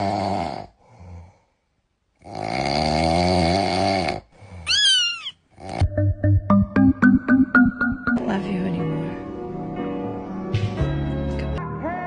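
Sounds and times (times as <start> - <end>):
wavering snore: 0.0 - 1.4, 2.2 - 4.6, 5.5 - 5.9.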